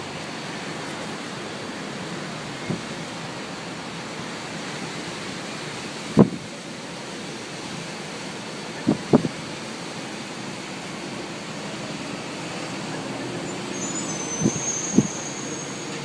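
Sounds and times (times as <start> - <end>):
road traffic: 0.0 - 16.0
thin high squeal: 11.9 - 16.0.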